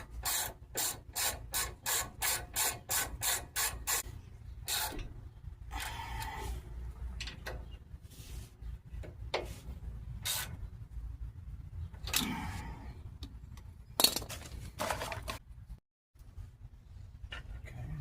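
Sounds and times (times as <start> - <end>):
tools and brake parts scraping and knocking: 0.0 - 10.7, 13.2 - 15.5
low steady rumble: 4.0 - 14.0.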